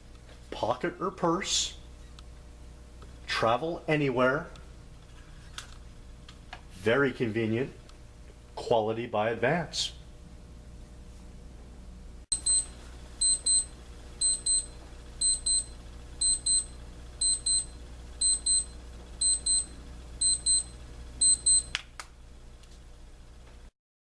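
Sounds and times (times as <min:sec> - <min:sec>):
alarm clock double beeps: 0:12.3 - 0:21.7.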